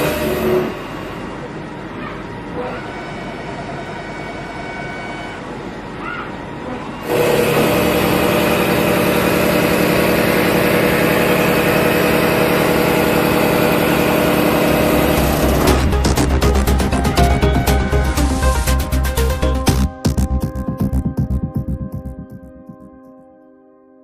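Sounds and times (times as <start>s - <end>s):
milling cutter cutting metal: 0.0s - 0.9s, 7.0s - 16.4s
machine hum: 0.0s - 23.0s.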